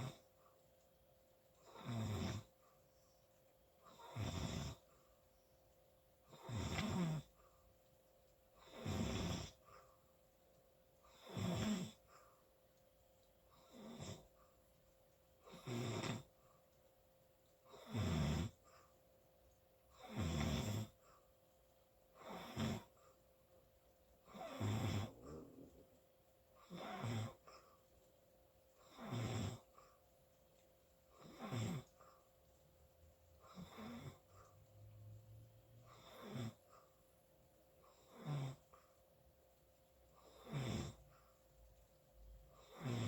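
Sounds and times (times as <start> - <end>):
quiet breathing: 0.0 - 12.8, 20.0 - 39.2, 39.8 - 43.0
person snoring: 24.4 - 25.8.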